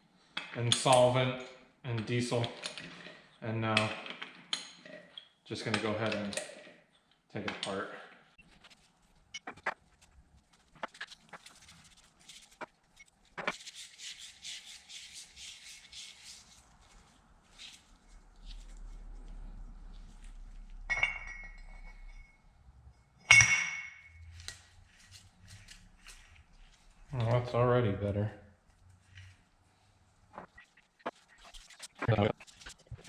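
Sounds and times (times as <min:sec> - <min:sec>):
ringing metal clinks: 0:20.9 - 0:22.4.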